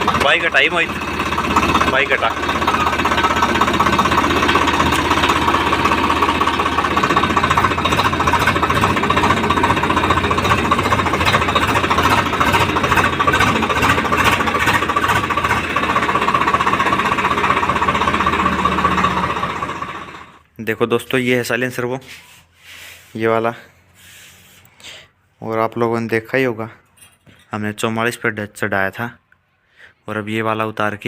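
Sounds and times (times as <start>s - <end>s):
tractor diesel engine running: 0.0s - 20.5s.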